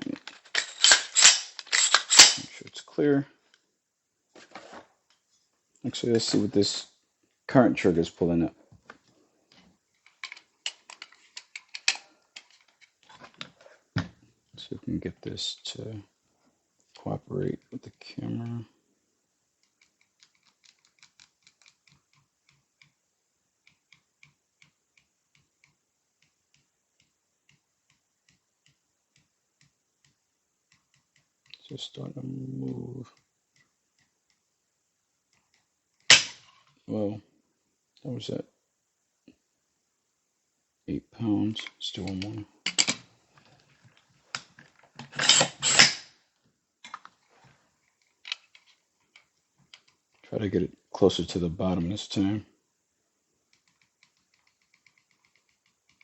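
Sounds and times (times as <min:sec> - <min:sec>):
rifle sliding clatters: 0:00.2 - 0:02.6, 0:44.3 - 0:46.0.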